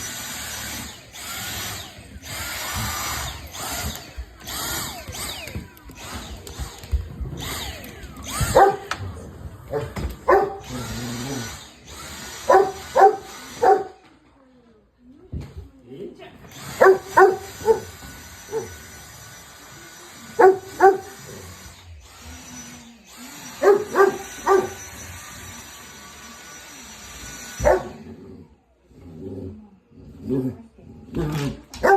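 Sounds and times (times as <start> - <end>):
vacuum cleaner motor surging: 0.0 - 14.1, 16.4 - 29.9
dog barking: 8.4 - 8.9, 9.7 - 10.8, 12.4 - 14.0, 16.7 - 17.9, 18.5 - 18.7, 20.4 - 21.2, 23.6 - 24.8, 27.6 - 28.0.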